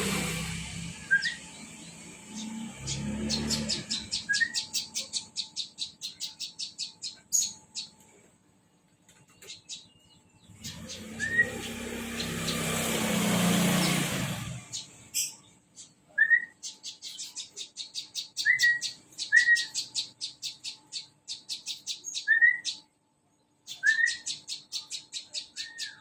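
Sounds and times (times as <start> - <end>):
loud rushing noise: 0.0 - 4.0
bird singing rapid trill: 0.0 - 8.0, 9.3 - 26.0
bird chirps: 0.0 - 8.2, 9.1 - 26.0.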